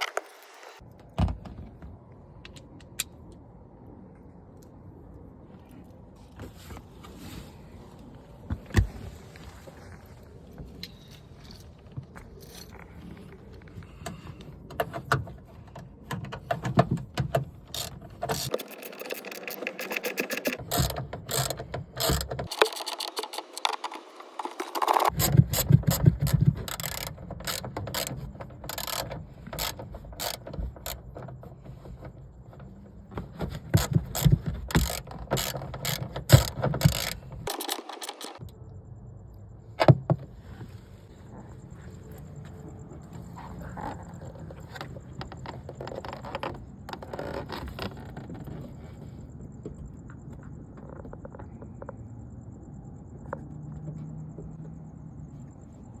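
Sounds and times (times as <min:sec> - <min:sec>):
hand ratchet clicking: 0:17.7 - 0:31.0, 0:33.8 - 0:38.4
tools and parts knocking: 0:33.1 - 0:38.4.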